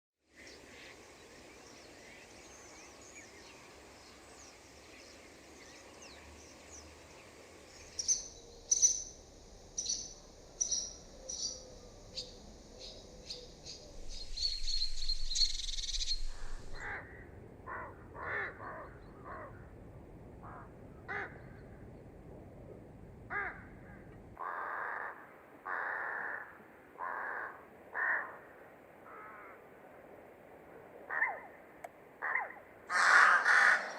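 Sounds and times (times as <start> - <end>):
distant birdsong chorus: 0.3 - 22.2
low bird calls: 7.8 - 19.7
rush of noise: 9.2 - 24.4.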